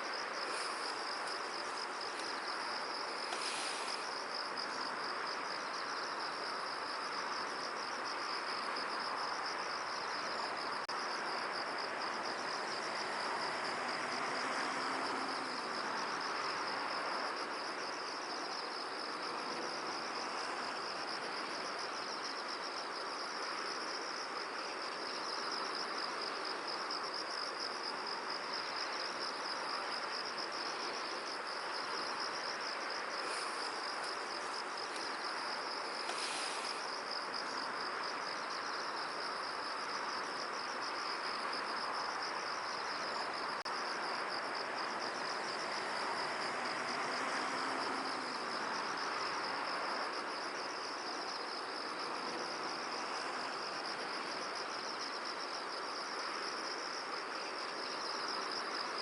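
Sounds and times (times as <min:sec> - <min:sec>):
wind hissing: 0:00.0 - 0:05.2, 0:30.8 - 0:37.7.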